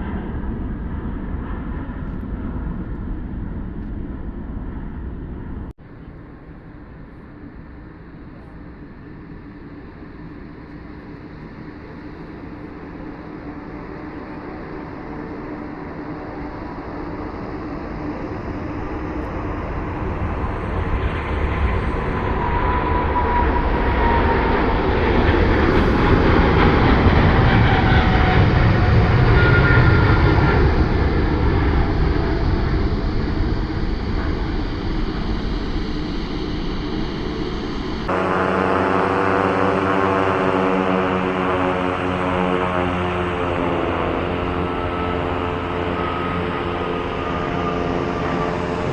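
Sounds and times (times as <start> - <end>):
airplane passing close by: 0.0 - 48.9
steady droning engine: 8.0 - 48.9.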